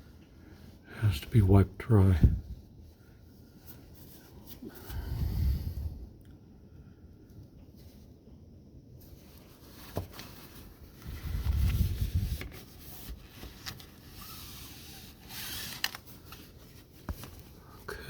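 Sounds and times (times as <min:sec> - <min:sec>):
towel rubbing window frame: 0:10.6 - 0:16.9.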